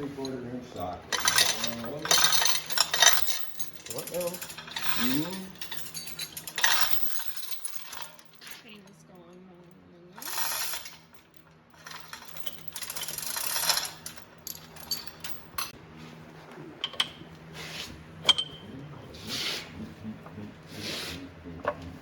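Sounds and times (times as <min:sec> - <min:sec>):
metal tools scraping: 0:00.0 - 0:08.9, 0:10.2 - 0:15.8, 0:16.8 - 0:18.8
steady low hum: 0:00.0 - 0:22.0
sharp metal clinks: 0:18.2 - 0:18.8.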